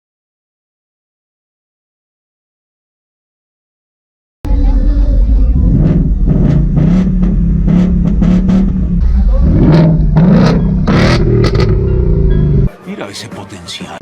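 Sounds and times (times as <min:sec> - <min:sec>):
car engine revving high: 0:04.5 - 0:12.7.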